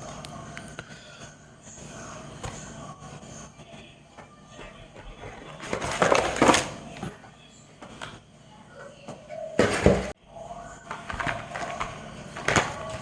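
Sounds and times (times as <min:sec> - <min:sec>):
packaging clicks and rustles: 0:10.9 - 0:13.0.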